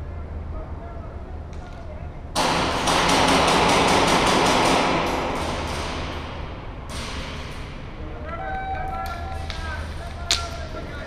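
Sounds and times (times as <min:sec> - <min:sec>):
airsoft gun rapid fire: 0:02.4 - 0:06.1.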